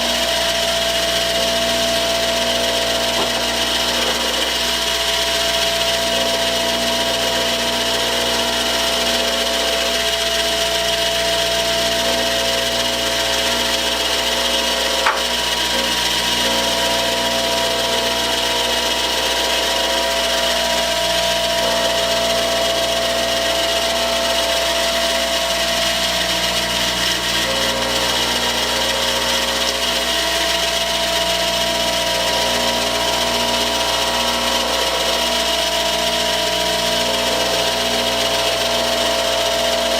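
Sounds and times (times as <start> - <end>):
grindstone grinding metal: 0.0 - 39.9
motor hum: 0.0 - 39.9.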